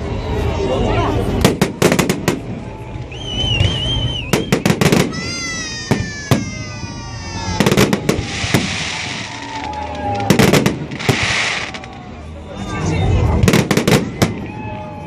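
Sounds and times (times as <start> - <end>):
fireworks bangs: 1.4 - 2.8, 3.5 - 12.3, 13.1 - 15.0
wavering high whistle: 2.8 - 5.0.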